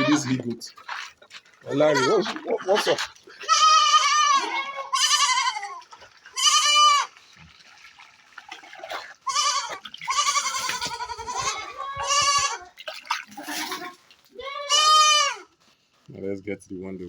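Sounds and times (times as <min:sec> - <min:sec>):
goats bleating: 0:00.0 - 0:00.5, 0:01.6 - 0:07.2, 0:09.2 - 0:12.8, 0:13.4 - 0:15.5.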